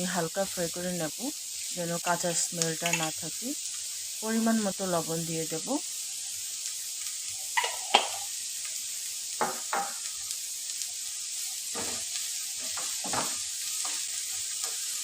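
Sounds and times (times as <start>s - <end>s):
vegetables sizzling in a pan: 0.0s - 15.0s
spatula scraping and knocking pan: 11.7s - 14.9s.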